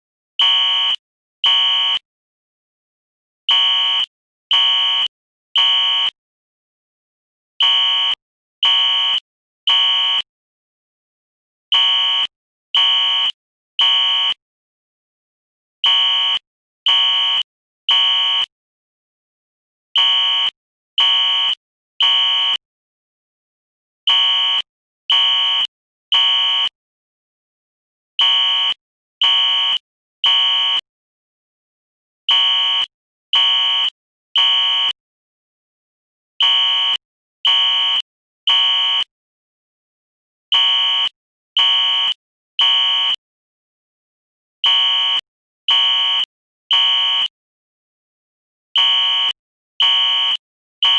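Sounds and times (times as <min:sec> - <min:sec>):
fire alarm beeps: 0:00.4 - 0:02.0, 0:03.5 - 0:06.2, 0:07.6 - 0:10.3, 0:11.7 - 0:14.4, 0:15.8 - 0:18.5, 0:19.9 - 0:22.6, 0:24.0 - 0:26.8, 0:28.2 - 0:30.9, 0:32.3 - 0:35.0, 0:36.4 - 0:39.1, 0:40.5 - 0:43.2, 0:44.6 - 0:47.3, 0:48.8 - 0:50.9.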